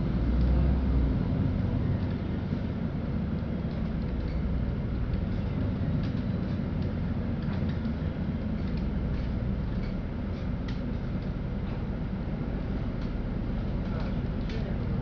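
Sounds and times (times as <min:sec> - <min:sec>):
bus engine and road rumble: 0:00.0 - 0:15.0
light rattles and ticks: 0:02.0 - 0:11.9, 0:12.9 - 0:14.9.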